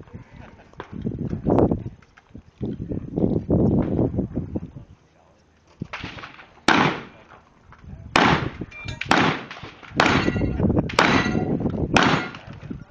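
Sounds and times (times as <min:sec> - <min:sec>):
gunshots with ringing tail: 0:06.0 - 0:07.2, 0:08.1 - 0:12.5.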